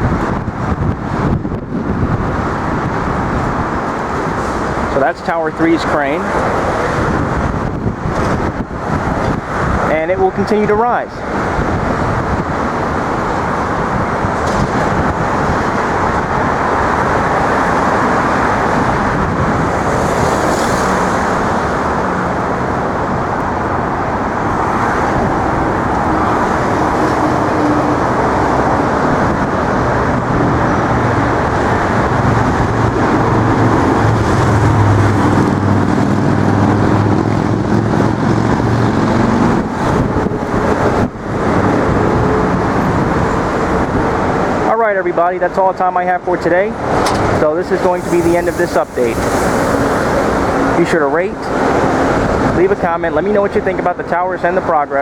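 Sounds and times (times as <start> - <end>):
road traffic noise: 0.0 - 55.0
low engine hum: 11.3 - 44.7, 46.7 - 52.6.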